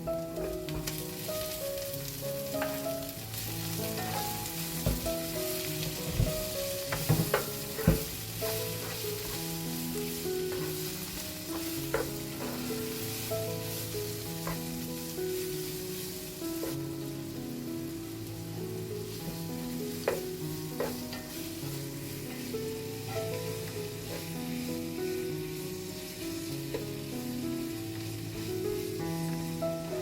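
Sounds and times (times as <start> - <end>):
soft background music: 0.0 - 30.0
vegetables sizzling in frying pan: 0.0 - 30.0
utensil knocking against pan: 6.2 - 8.1.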